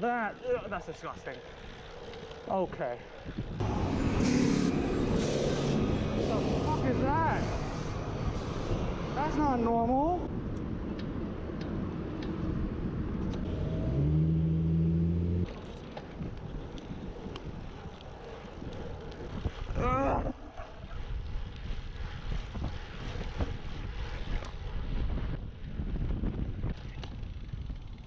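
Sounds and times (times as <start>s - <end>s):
road and traffic noise: 0.0s - 19.8s
wind buffeting microphone: 3.1s - 14.1s, 15.8s - 28.0s
short rising squeal: 3.6s - 8.8s.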